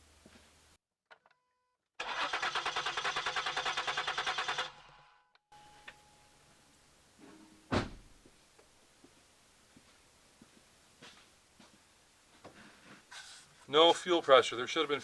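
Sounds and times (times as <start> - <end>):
engine cranking on starter: 2.0 - 5.1
sharp thump: 7.7 - 8.1.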